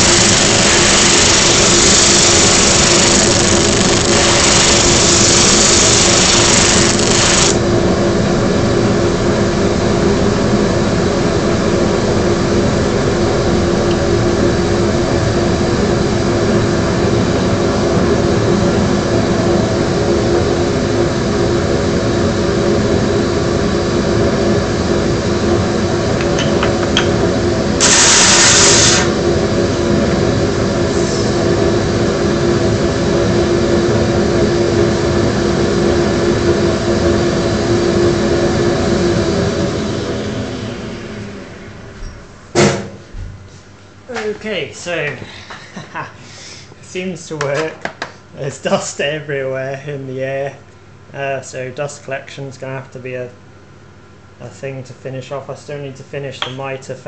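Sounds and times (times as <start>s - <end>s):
wood grinding on sander disc: 0.0s - 7.6s
motor hum: 0.0s - 21.4s.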